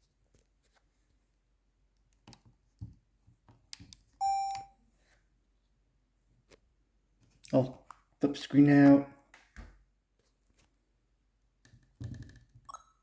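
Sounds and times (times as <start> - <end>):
short electronic beep: 4.2 - 4.7.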